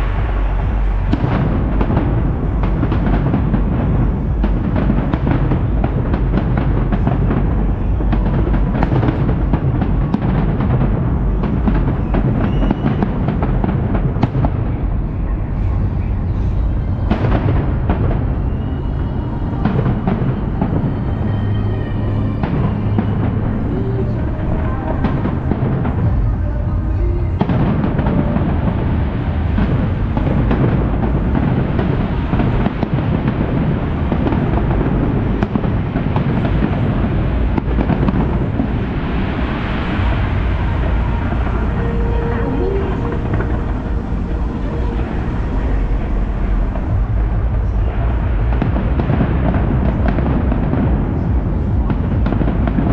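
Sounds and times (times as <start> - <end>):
deep rumble of booms: 0.0 - 52.9
fireworks bangs and crackles: 0.0 - 52.9
firework whistles: 11.4 - 14.4.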